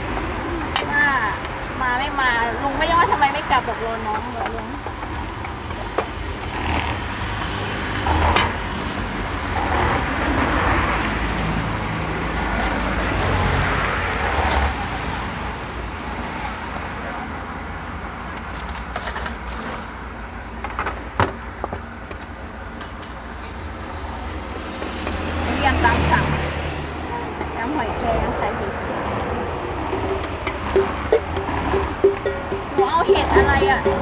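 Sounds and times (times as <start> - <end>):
road noise: 0.0 - 34.0
sharp clicks: 30.0 - 34.0.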